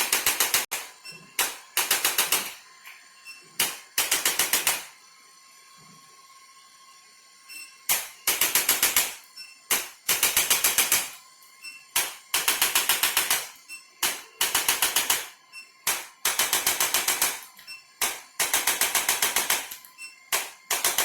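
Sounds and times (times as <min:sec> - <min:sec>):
rapid mechanical clicks: 0:00.0 - 0:02.6, 0:03.6 - 0:04.9, 0:07.9 - 0:11.1, 0:12.0 - 0:15.3, 0:15.9 - 0:21.0.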